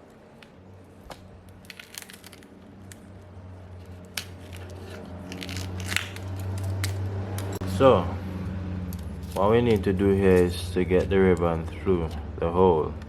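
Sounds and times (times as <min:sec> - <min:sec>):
glued panel cracking: 0:01.0 - 0:07.6.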